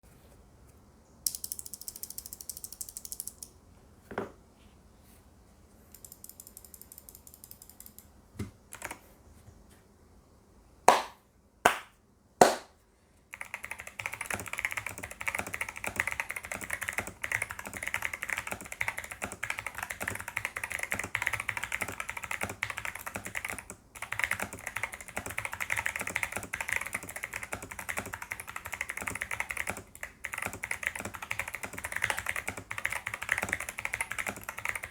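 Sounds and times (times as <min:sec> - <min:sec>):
mechanical keyboard typing: 0:06.0 - 0:08.1, 0:08.7 - 0:09.0, 0:13.3 - 0:34.9.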